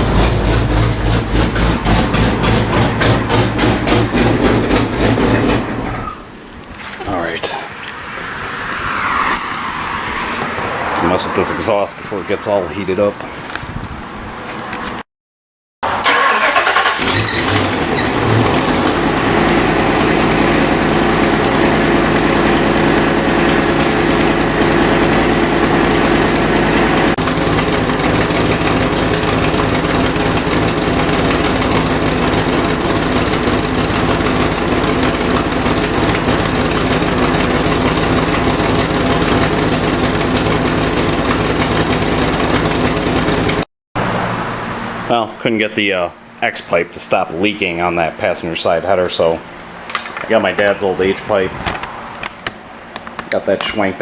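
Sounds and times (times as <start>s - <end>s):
rapid exhaust pulse: 0.0s - 6.3s
car engine starting and idling: 0.0s - 12.9s, 15.8s - 46.4s.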